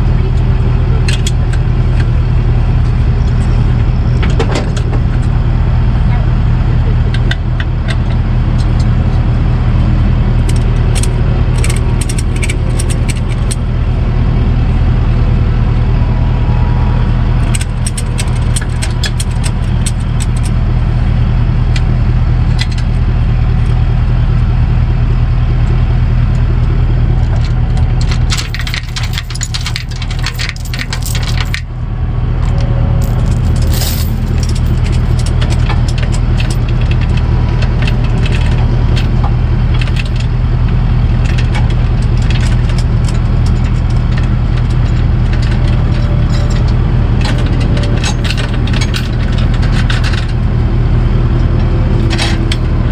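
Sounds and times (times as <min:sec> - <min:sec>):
clinks and rattles in cab: 0:00.0 - 0:06.3, 0:06.9 - 0:13.7, 0:17.4 - 0:20.8, 0:21.6 - 0:23.8, 0:26.3 - 0:31.8, 0:32.4 - 0:52.9
truck engine running: 0:00.0 - 0:52.9.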